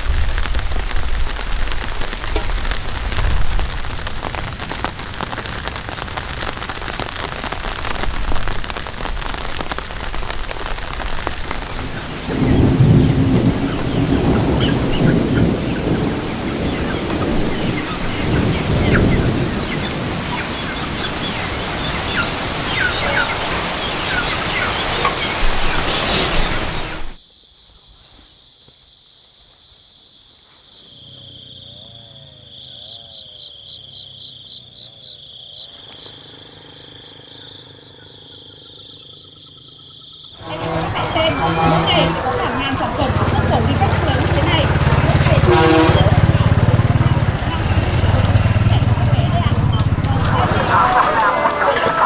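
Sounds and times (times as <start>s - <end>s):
heavy rain pouring: 0.0s - 27.2s, 40.4s - 52.0s
low rolls of thunder: 0.0s - 27.2s, 40.4s - 52.0s
insects trilling: 0.0s - 52.0s.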